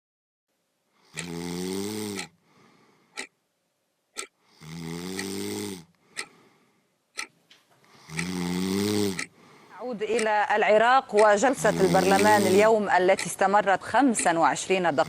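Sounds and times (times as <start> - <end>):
faint breaths: 0.8 - 3.4, 4.2 - 9.9
person snoring loudly: 1.1 - 2.4, 4.5 - 5.9, 8.0 - 9.3, 11.6 - 12.7.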